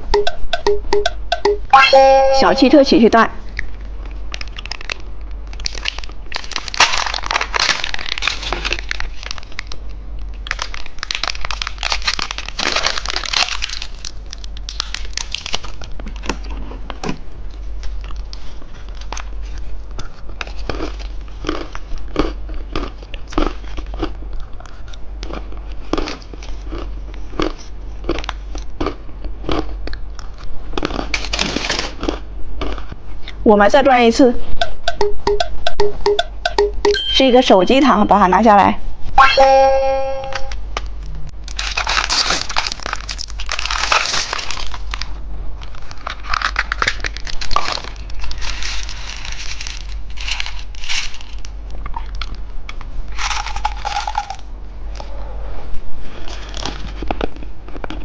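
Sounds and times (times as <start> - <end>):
plastic wrapper crinkling: 3.6 - 16.4, 41.4 - 51.6.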